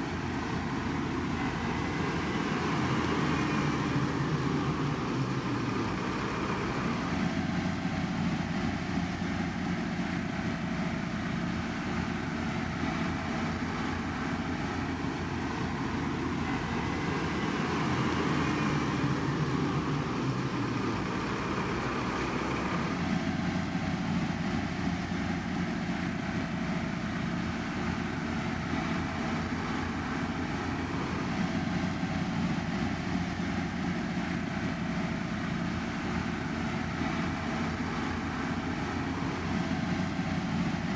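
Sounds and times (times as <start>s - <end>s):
heavy construction machinery running: 0.0s - 40.9s.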